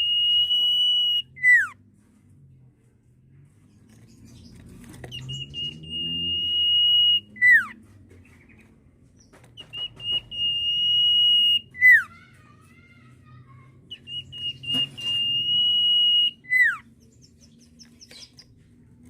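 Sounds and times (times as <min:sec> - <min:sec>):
bird whistling song: 0:00.0 - 0:01.8, 0:05.1 - 0:07.8, 0:09.6 - 0:12.1, 0:13.9 - 0:18.5.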